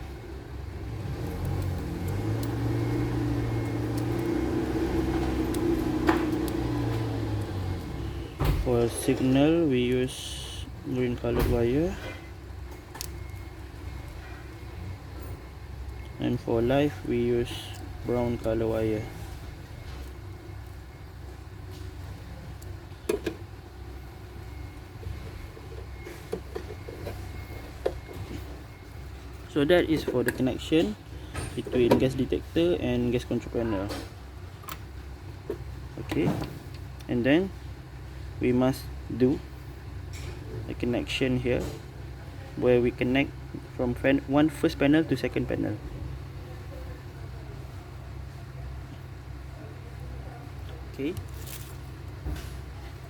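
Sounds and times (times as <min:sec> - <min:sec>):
low mechanical hum: 0:00.0 - 0:53.0.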